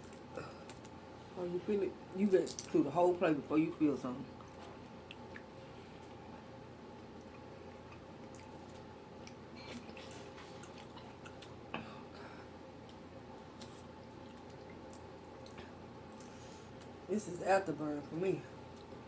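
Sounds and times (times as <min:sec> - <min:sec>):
low background hum: 0:00.0 - 0:19.0
wet chewing smacks: 0:04.3 - 0:11.6, 0:12.8 - 0:17.0.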